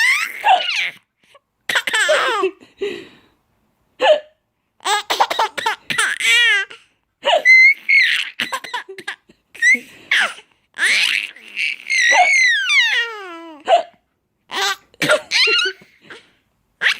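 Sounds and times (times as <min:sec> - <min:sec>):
baby laughing and squealing: 0:00.0 - 0:01.0, 0:04.8 - 0:13.9, 0:14.5 - 0:16.2
baby hiccups: 0:13.4 - 0:14.0.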